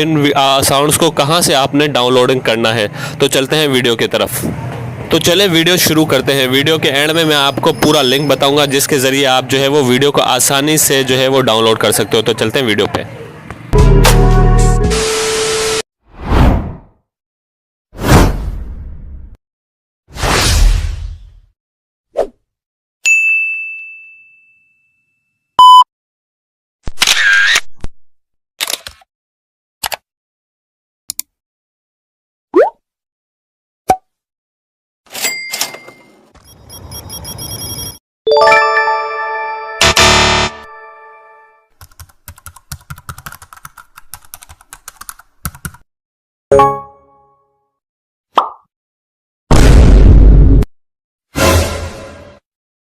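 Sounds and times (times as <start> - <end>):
bright bell-like ding: 23.1 - 25.0
short loud beep: 25.6 - 25.9, 39.8 - 41.1.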